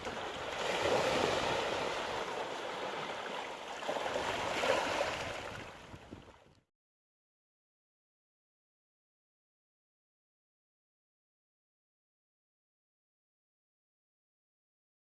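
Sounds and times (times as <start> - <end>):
sea waves breaking on shore: 0.0 - 6.5.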